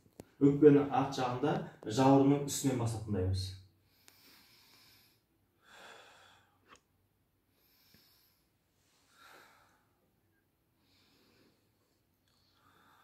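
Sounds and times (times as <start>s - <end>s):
slow deep breathing: 3.8s - 6.8s, 7.5s - 10.2s, 10.8s - 13.0s.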